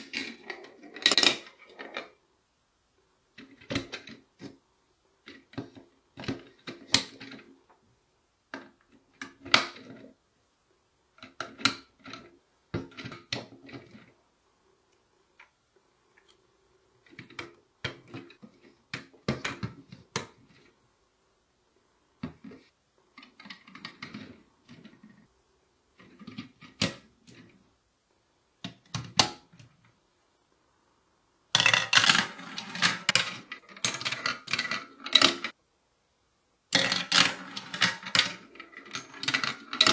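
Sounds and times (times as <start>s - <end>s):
plastic toy pieces clattering: 31.6s - 35.6s, 36.7s - 39.9s.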